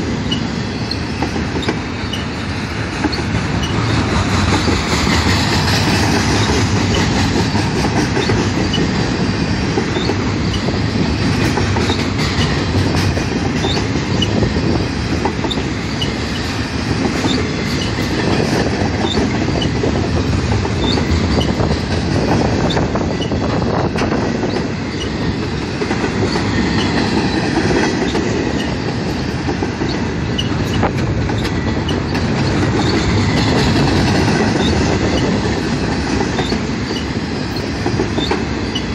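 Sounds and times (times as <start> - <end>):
train cars rolling on steel wheels: 0.0 - 38.9
wheels clicking over rail joints: 0.2 - 38.9
wheel squeaks: 20.8 - 21.6.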